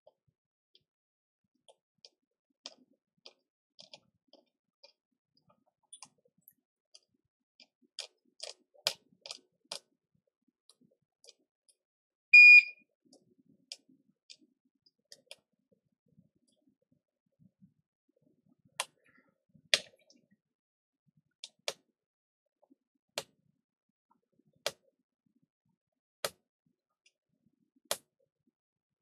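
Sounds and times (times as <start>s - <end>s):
short electronic beep: 12.4s - 12.8s.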